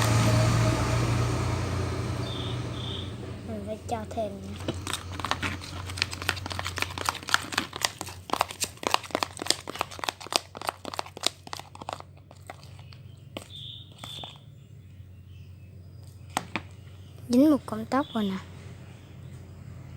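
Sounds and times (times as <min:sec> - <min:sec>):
slime crackling and popping: 0:04.5 - 0:14.4.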